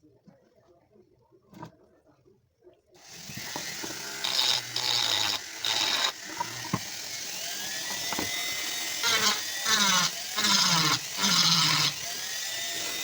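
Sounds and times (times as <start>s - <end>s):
small power tool running: 3.0s - 13.0s.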